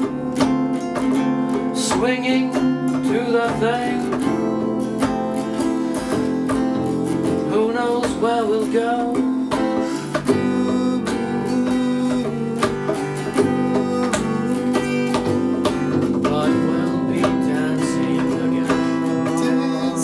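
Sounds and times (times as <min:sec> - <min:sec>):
acoustic guitar playing: 0:00.0 - 0:20.0.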